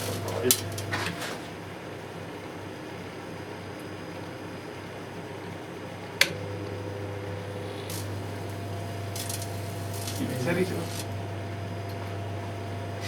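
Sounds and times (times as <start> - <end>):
electrical arcing crackles: 0.0 - 1.5, 7.2 - 13.0
microwave oven humming: 0.0 - 13.0
microwave oven click: 6.2 - 12.3.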